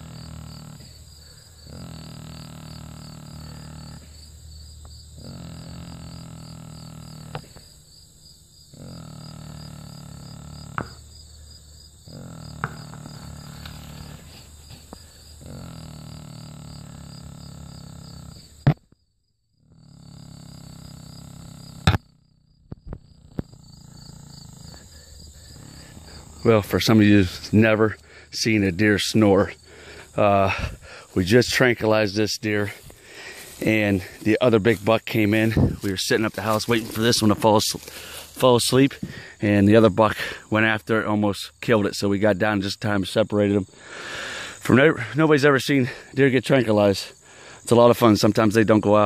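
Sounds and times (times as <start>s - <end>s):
deer snoring: 0.0s - 18.8s, 19.5s - 40.5s, 43.6s - 46.2s
high insect chirring: 0.0s - 49.0s
sharp loud clicks: 21.8s - 22.1s.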